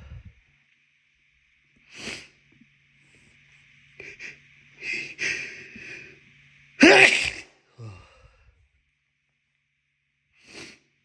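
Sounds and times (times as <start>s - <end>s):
man sneezing: 6.8s - 8.0s
man sniffing: 6.8s - 8.1s.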